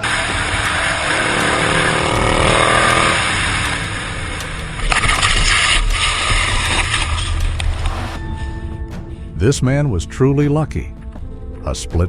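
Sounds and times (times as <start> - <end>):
loud rushing noise: 0.0 - 8.2
engine drone rising in pitch: 0.0 - 8.8.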